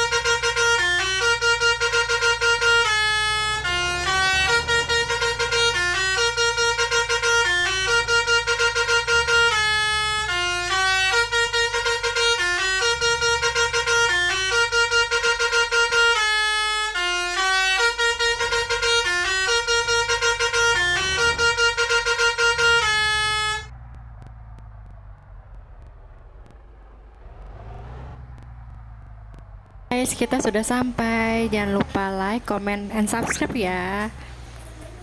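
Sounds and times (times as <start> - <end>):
musical air horn playing a tune: 0.0 - 23.7
low bus rumble: 0.0 - 35.0.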